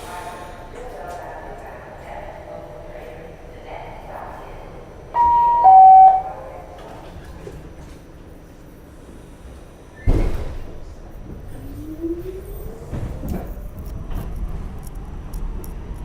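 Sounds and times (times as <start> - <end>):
rumble of train wheels: 0.0 - 16.0
subway doors shutting: 5.0 - 15.6.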